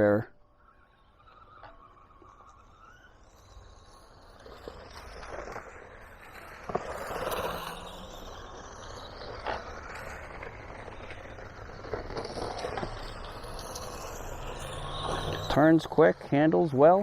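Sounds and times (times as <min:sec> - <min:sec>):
toy car scraping through leaves: 0:00.0 - 0:17.0
toy car knocking: 0:01.3 - 0:16.2.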